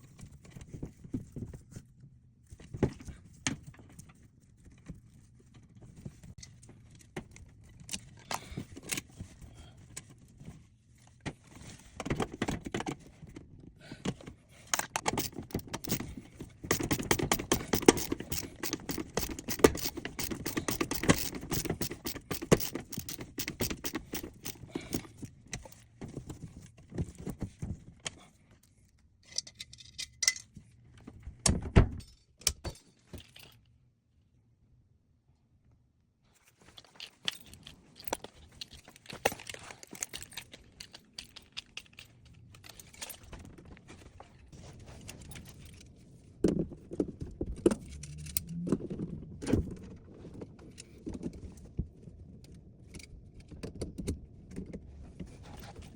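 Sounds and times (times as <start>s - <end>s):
metal tools clinking and rattling: 14.7s - 25.3s, 36.7s - 43.6s.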